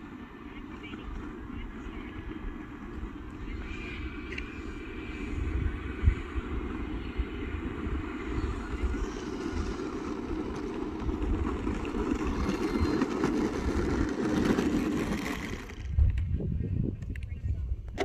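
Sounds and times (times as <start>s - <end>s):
wind buffeting microphone: 0.0s - 18.0s.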